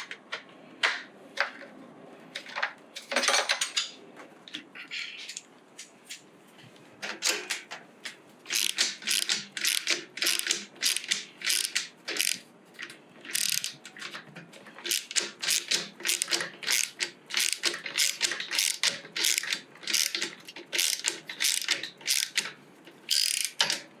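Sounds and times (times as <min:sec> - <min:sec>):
ratchet clicking: 0:08.5 - 0:12.4, 0:13.3 - 0:13.8, 0:14.9 - 0:22.5, 0:23.1 - 0:23.8.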